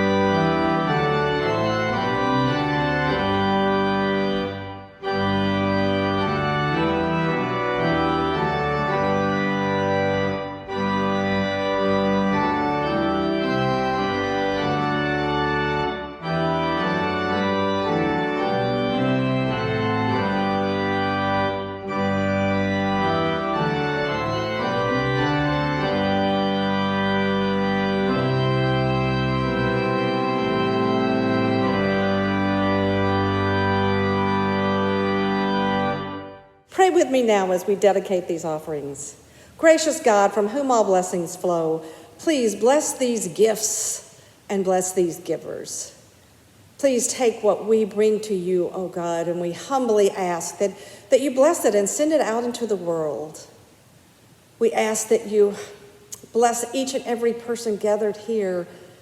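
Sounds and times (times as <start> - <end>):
organ playing slow chords: 0.0 - 36.7.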